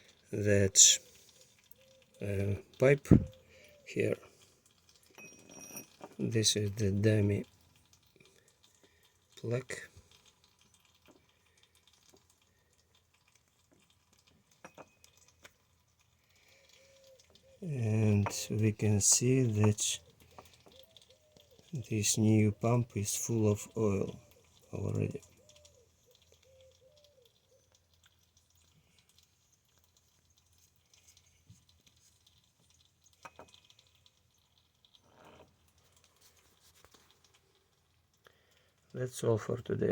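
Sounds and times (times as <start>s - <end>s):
faint clicks: 7.4s - 18.6s, 19.5s - 21.8s, 24.1s - 38.9s.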